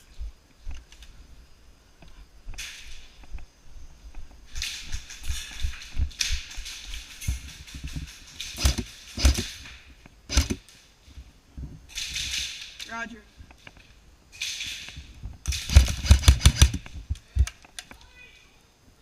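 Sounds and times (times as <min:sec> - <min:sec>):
sharp cracks: 0:04.5 - 0:10.8, 0:11.9 - 0:18.1.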